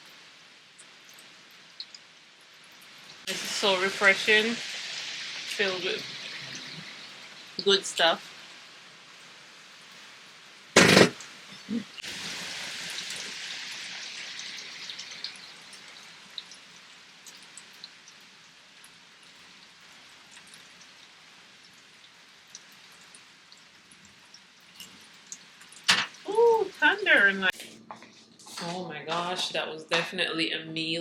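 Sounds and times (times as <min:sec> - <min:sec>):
rain falling and dripping: 0:00.0 - 0:27.6
sharp knock: 0:10.8 - 0:11.2.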